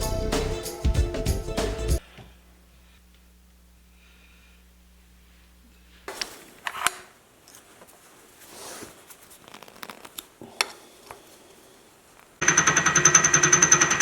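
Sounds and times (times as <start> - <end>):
light scraping and handling: 5.7 - 12.4.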